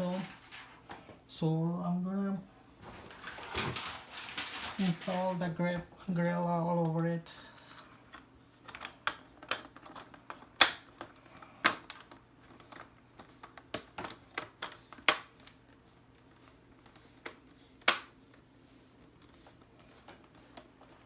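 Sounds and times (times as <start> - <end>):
plastic clips snapping: 8.7 - 15.3.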